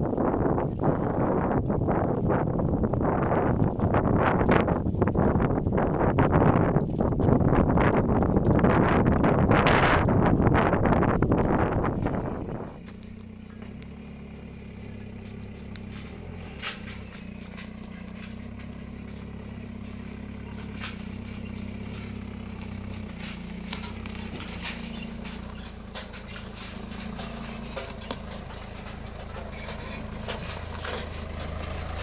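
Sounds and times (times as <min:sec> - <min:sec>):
engine humming: 0:00.0 - 0:32.0
light clicks and taps: 0:15.2 - 0:31.9.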